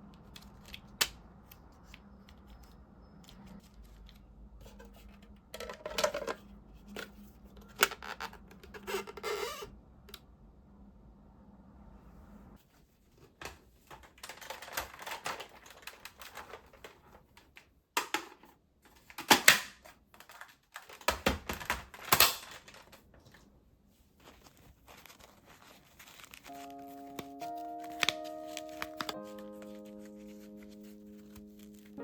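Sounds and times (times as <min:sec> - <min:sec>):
rustling and crinkling handling noises: 0:00.0 - 0:09.6, 0:12.6 - 0:32.0
soft background music: 0:26.5 - 0:32.0.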